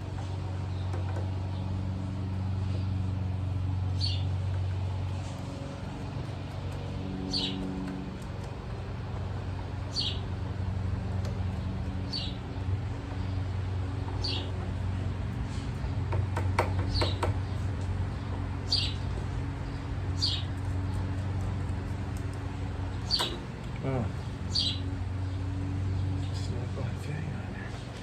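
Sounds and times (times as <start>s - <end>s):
steady low hum: 0.0s - 28.0s
bird chirping: 24.2s - 26.4s.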